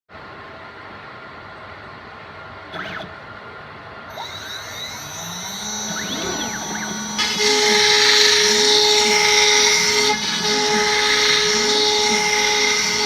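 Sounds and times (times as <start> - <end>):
router spindle high whine: 2.7 - 3.2, 4.1 - 13.0
stepper motors whining: 2.7 - 3.2, 4.1 - 13.0.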